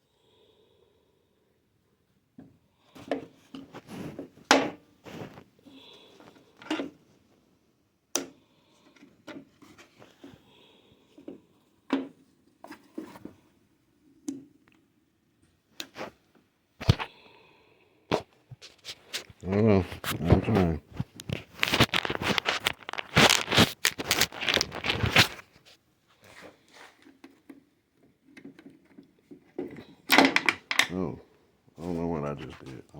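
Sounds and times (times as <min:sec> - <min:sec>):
parts clicking and knocking: 0:27.0 - 0:31.0.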